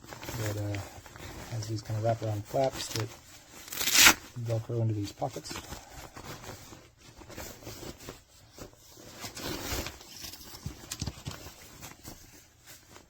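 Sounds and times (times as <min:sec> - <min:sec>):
fabric rustling: 0:00.0 - 0:13.0
short rasping rip: 0:03.7 - 0:04.2.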